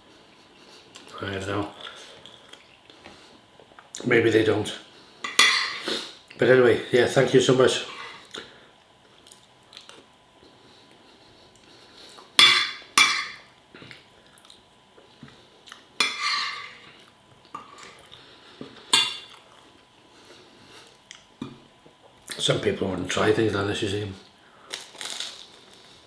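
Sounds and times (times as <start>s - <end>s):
cutlery clinking on a plate: 5.3s - 5.8s, 12.4s - 13.5s, 16.0s - 16.8s.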